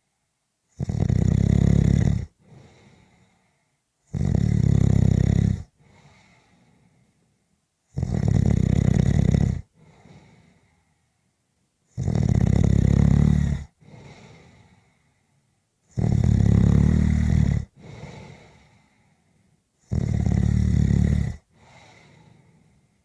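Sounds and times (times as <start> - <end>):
person snoring: 0.8 - 3.0, 4.1 - 5.7, 8.0 - 10.1, 12.0 - 14.7, 15.9 - 18.8, 19.9 - 22.5.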